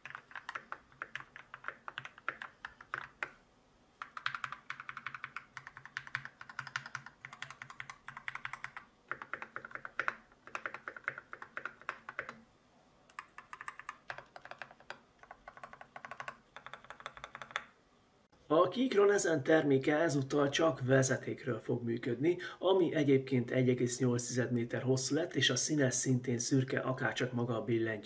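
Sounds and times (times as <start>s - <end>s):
mechanical keyboard typing: 0.0s - 3.4s, 4.0s - 12.4s, 13.1s - 17.7s.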